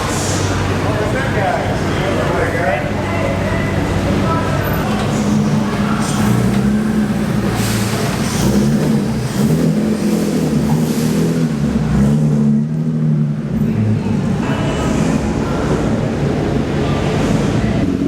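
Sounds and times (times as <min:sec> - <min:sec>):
car engine running: 0:00.0 - 0:18.0.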